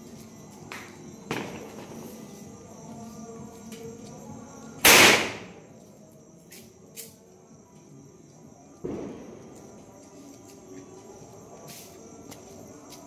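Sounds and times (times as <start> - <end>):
firecracker bang: 1.3 - 2.0, 4.8 - 5.6, 8.8 - 9.5.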